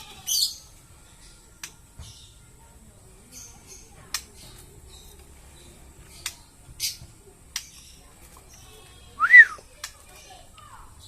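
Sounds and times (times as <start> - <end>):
lovebird clicking chirps: 6.2 - 6.4.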